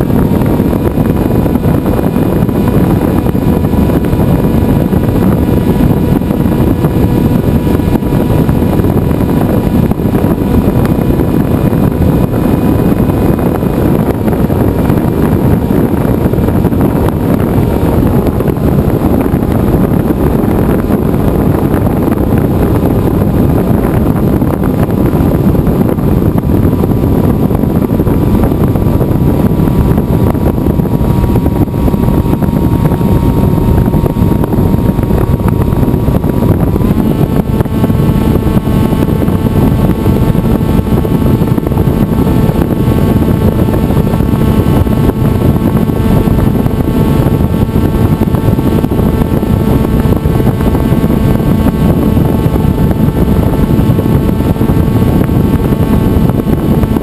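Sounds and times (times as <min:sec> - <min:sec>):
electric motor and propeller whining: 0:00.0 - 0:57.0
wind rush on microphone: 0:00.0 - 0:57.0.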